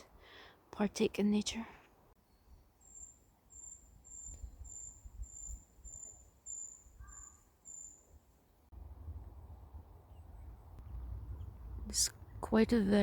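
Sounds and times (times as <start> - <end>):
small bird high-pitched calls: 2.2 - 8.2
faint low rumble: 8.7 - 13.0.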